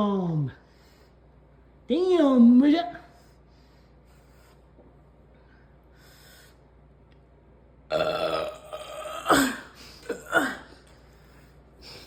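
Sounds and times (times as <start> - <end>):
person belching: 7.9 - 10.7.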